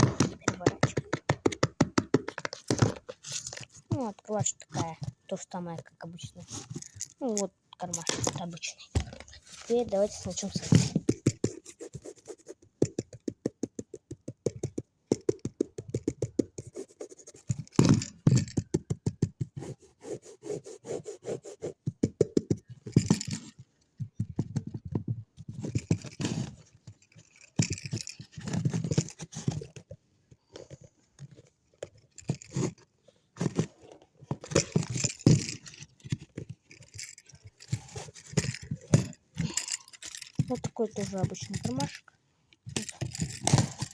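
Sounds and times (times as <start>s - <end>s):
fingers tapping on a handbag: 0.0s - 5.2s, 10.8s - 19.8s, 21.8s - 32.8s
fingers scratching a handbag: 0.0s - 5.3s, 6.3s - 42.1s, 42.7s - 43.9s.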